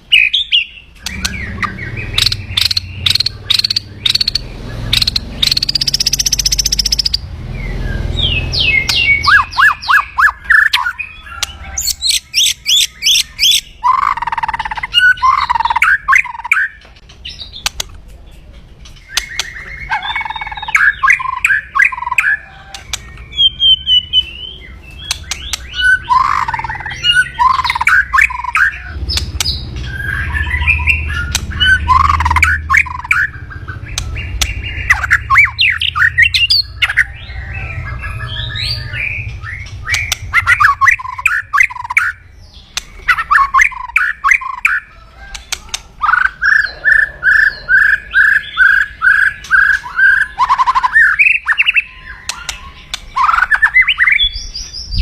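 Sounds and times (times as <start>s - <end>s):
bird harsh rattling calls: 0.1s - 7.2s, 18.8s - 54.8s.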